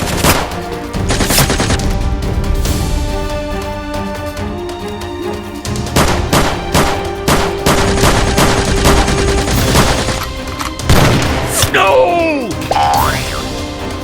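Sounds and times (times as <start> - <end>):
background music: 0.0 - 14.0
gunshot sound effects: 10.9 - 11.6.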